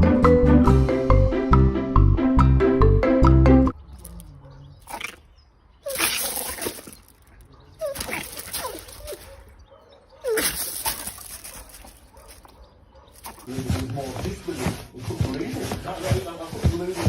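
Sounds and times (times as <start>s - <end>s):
dog whining: 7.8s - 9.5s, 10.2s - 11.2s.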